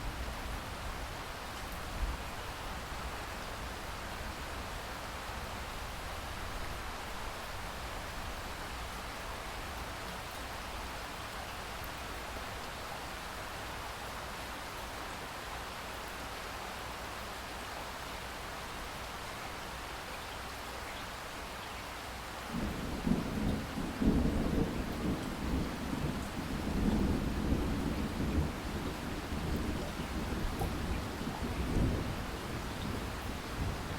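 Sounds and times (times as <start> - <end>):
steady rain falling: 0.0 - 33.9
thunder rumbling: 22.5 - 33.9.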